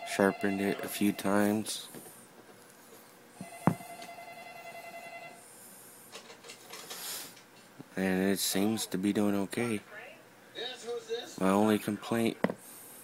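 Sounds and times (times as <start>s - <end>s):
faint steady tones: 0.0s - 5.9s.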